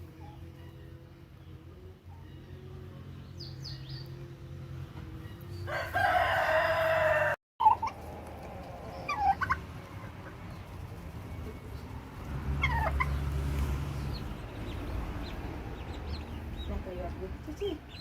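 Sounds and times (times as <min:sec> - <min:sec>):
poultry clucking: 0:04.9 - 0:13.4
rooster crowing: 0:05.5 - 0:07.4.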